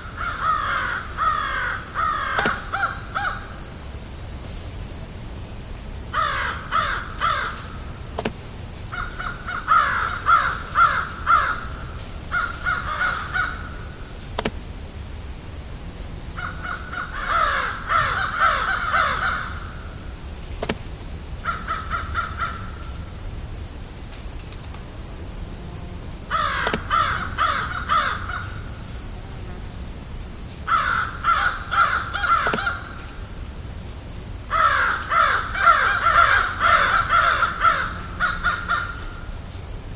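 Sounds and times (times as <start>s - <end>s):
crows cawing: 0.0s - 3.6s, 6.1s - 7.8s, 8.9s - 14.0s, 16.4s - 19.9s, 21.4s - 22.9s, 26.3s - 28.7s, 30.7s - 33.0s, 34.5s - 39.3s
steady high hiss: 0.0s - 39.9s.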